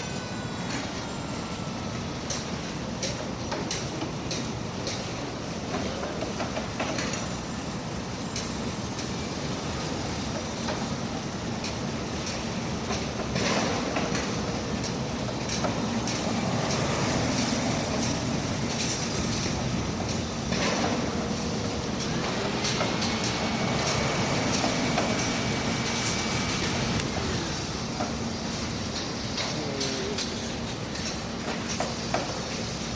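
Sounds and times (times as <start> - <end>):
thin whine: 0.0 - 2.9.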